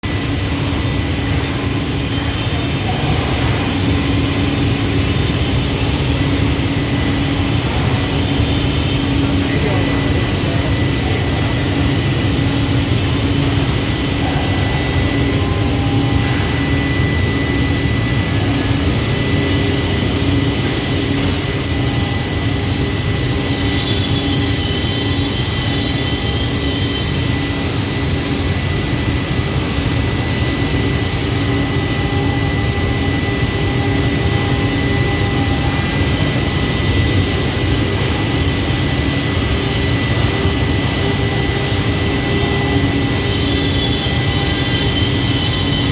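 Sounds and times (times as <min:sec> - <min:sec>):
bright hiss: 0:00.0 - 0:01.9, 0:20.4 - 0:34.1
scroll saw hum and whine: 0:00.0 - 0:45.9.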